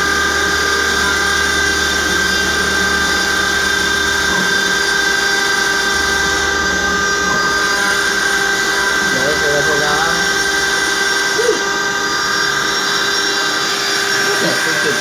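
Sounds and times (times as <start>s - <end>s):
machine spindle whining: 0.0s - 15.0s.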